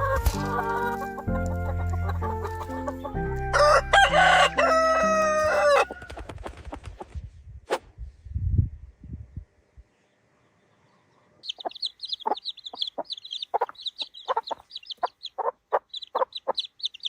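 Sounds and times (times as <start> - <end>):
chickens clucking: 0.0 - 6.7, 11.4 - 17.0
high chirps: 11.4 - 17.0.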